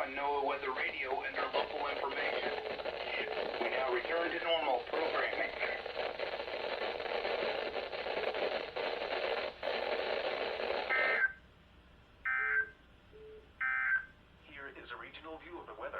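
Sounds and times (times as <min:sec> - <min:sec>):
radio receiver hiss: 0:00.0 - 0:11.3
raspy digital data bursts: 0:00.7 - 0:11.3.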